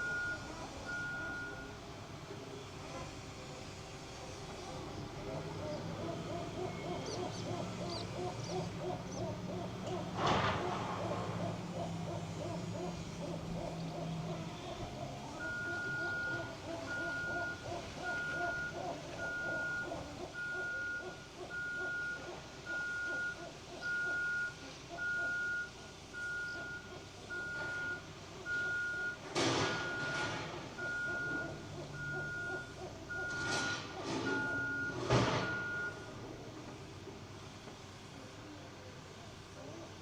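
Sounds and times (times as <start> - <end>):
reversing alarm beeping: 0.0 - 1.8, 14.8 - 36.2.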